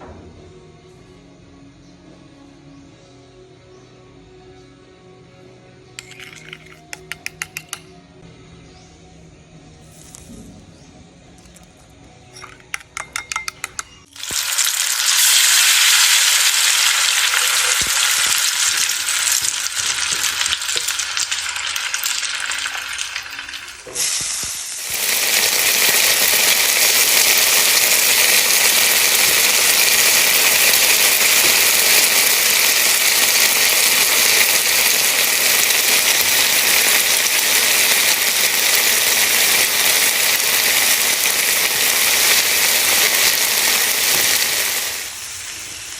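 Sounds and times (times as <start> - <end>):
food sizzling in a pan: 6.0 - 7.8, 9.8 - 10.4, 12.3 - 45.9
clicks: 6.0 - 7.9.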